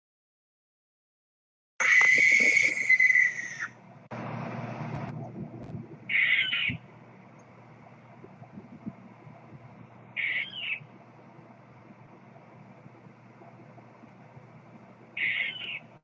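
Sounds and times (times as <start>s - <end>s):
barn owl screech: 1.8s - 3.8s, 6.1s - 6.8s, 10.2s - 10.8s, 15.2s - 15.9s.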